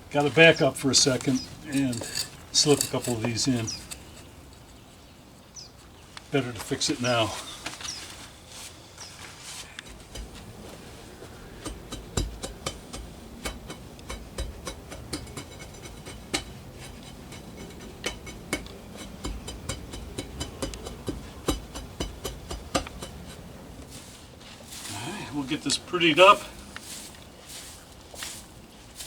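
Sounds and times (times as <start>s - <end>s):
rock ballast clicking and clinking: 0.7s - 4.8s, 11.6s - 23.4s
dull knocks: 11.6s - 16.5s.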